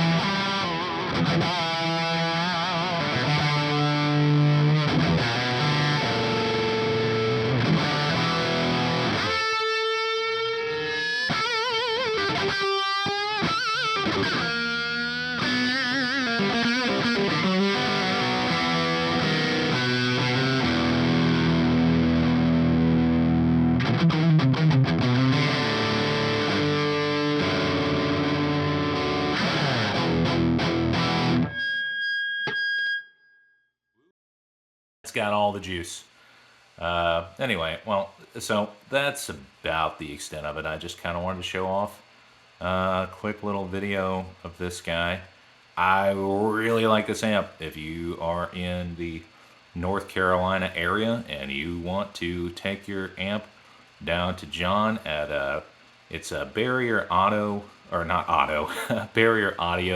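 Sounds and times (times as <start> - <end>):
distorted electric guitar: 0.0 - 31.9, 58.1 - 59.9.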